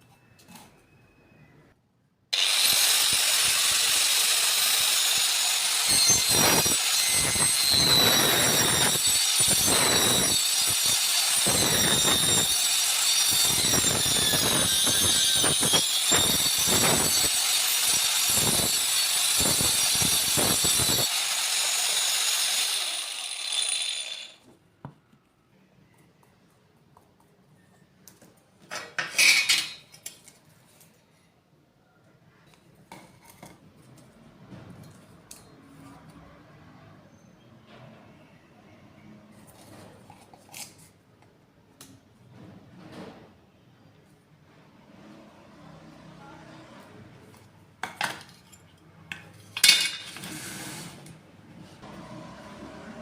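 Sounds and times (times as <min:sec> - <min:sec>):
hard objects clinking and knocking: 0:47.8 - 0:50.3.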